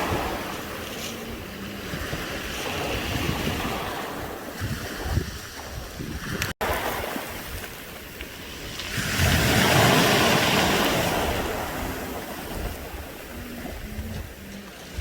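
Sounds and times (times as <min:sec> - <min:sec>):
wave washing up beach: 0:00.0 - 0:15.0.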